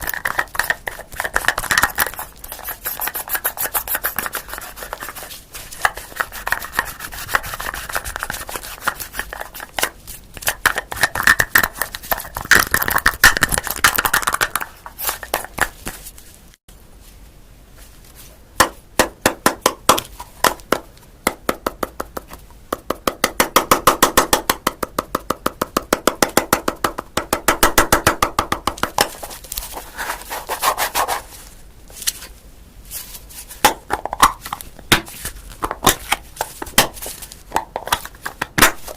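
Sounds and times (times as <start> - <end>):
objects clicking and tapping: 0.0 - 5.2, 5.8 - 16.1, 33.6 - 38.9
objects rubbing and scraping: 29.0 - 32.3.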